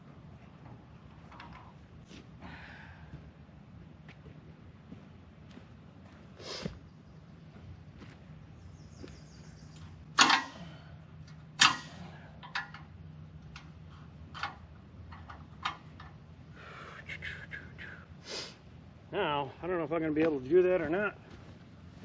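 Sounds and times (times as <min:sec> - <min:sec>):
low engine hum: 0:00.0 - 0:22.0
sharp knocks and clanks: 0:10.2 - 0:10.7.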